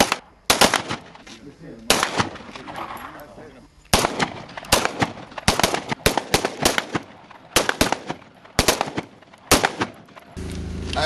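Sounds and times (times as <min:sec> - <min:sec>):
rifle shots: 0:00.0 - 0:01.2, 0:01.8 - 0:03.0, 0:03.9 - 0:10.4.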